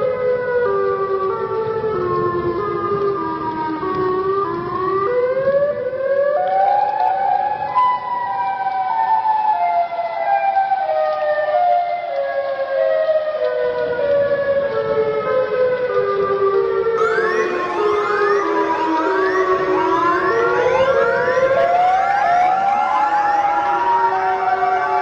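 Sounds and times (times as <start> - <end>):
emergency alarm siren: 17.0 - 25.0.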